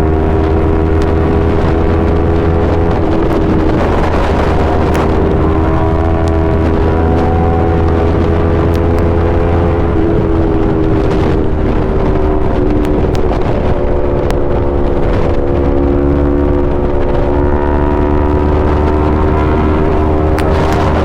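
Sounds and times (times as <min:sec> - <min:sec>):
motorcycle engine running: 0:00.0 - 0:21.0.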